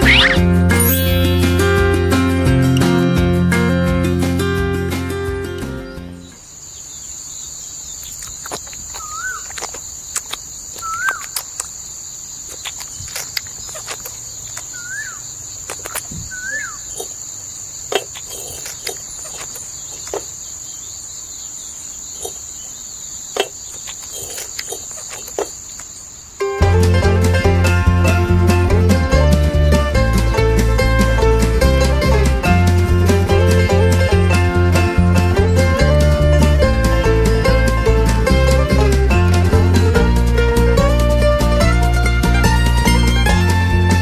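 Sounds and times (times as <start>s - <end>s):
bird whistled call: 0.0s - 1.7s, 9.0s - 9.5s, 10.8s - 11.4s, 14.7s - 15.2s, 16.2s - 17.1s
crickets trilling: 5.5s - 26.6s.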